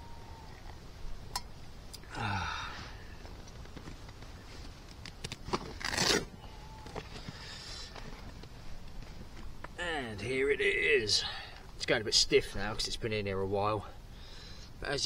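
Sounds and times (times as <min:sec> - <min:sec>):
man sighing: 0:02.0 - 0:03.2.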